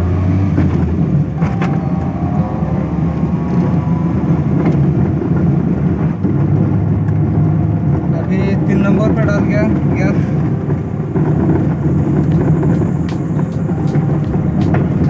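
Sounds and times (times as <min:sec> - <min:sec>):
car engine droning under load: 0:00.0 - 0:15.0.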